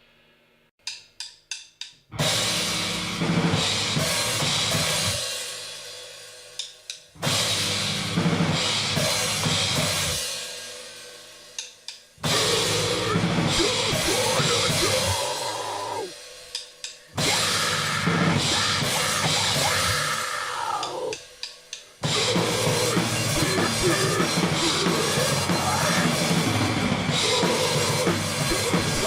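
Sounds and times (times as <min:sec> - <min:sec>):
fast drumming: 0:02.2 - 0:05.6, 0:07.2 - 0:10.4, 0:12.2 - 0:21.4, 0:22.0 - 0:29.0
harsh distorted noise: 0:12.2 - 0:16.2, 0:17.1 - 0:21.2, 0:22.0 - 0:29.0.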